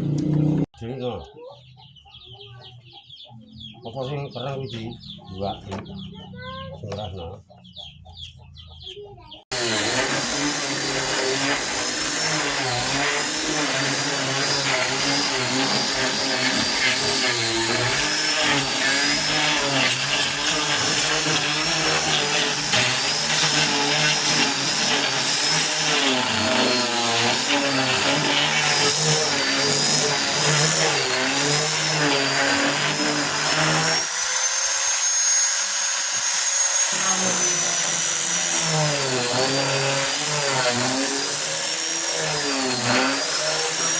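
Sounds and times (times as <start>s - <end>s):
power tool motor whining: 0.0s - 0.7s, 9.5s - 43.9s.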